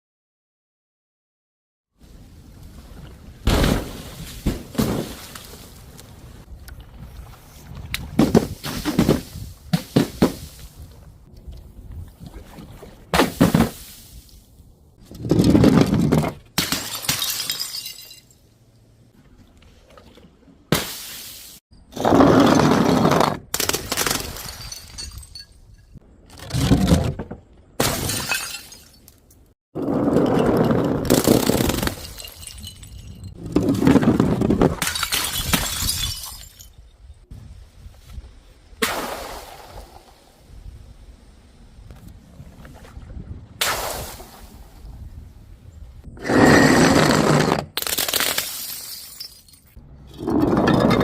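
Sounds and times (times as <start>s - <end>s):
glass bottles smashing: 16.6s - 18.4s, 23.9s - 25.9s, 27.8s - 29.2s, 31.1s - 33.4s, 34.8s - 36.8s, 47.8s - 51.0s.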